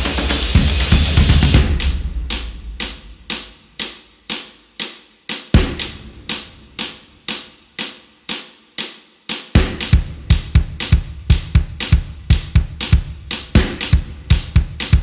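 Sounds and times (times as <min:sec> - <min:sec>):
background music with drum beat: 0:00.0 - 0:15.0.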